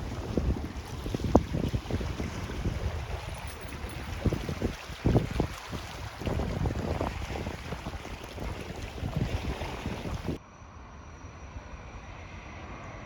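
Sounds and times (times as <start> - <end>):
wind buffeting microphone: 0.0 - 10.4.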